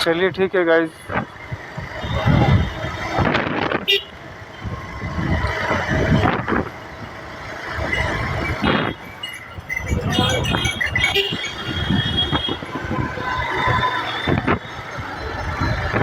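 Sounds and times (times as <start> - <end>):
passing vehicles: 0.0 - 16.0
motorcycle riding: 1.0 - 16.0
wind on microphone: 1.1 - 3.9, 4.6 - 16.0
brief high tone: 7.9 - 13.2.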